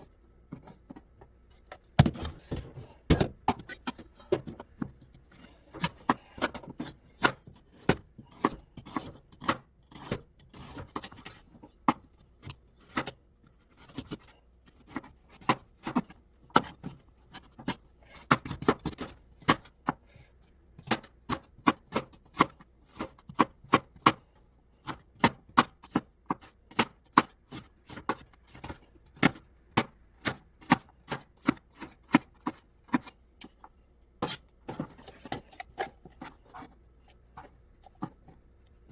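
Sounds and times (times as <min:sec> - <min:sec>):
knife chopping on cutting board: 0:24.8 - 0:33.1.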